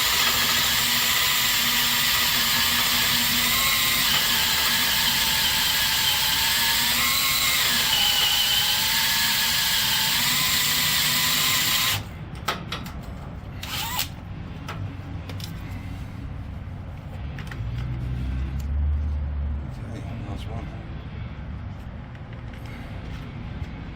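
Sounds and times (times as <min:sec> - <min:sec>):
electric drill boring metal: 0:00.0 - 0:12.1, 0:13.6 - 0:14.1.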